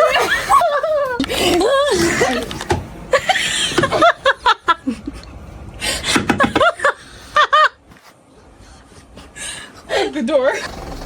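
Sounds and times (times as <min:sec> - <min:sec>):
people laughing: 0:00.0 - 0:02.5, 0:03.1 - 0:05.4, 0:06.1 - 0:08.0.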